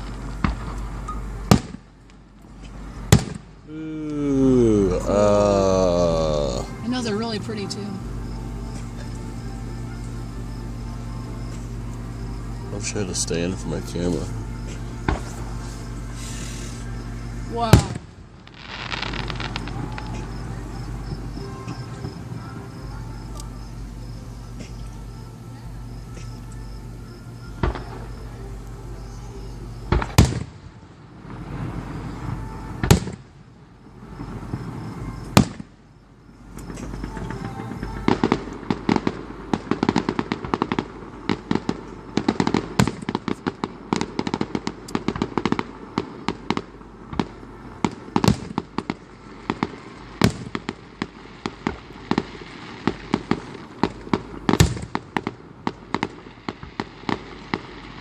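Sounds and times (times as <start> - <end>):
firework booms: 0.0 - 1.9, 3.0 - 3.7, 14.6 - 16.6, 17.5 - 22.8, 27.6 - 28.2, 29.9 - 33.4, 34.0 - 35.8, 36.6 - 58.0
firework crackle of small pops: 0.0 - 4.2, 11.4 - 58.0.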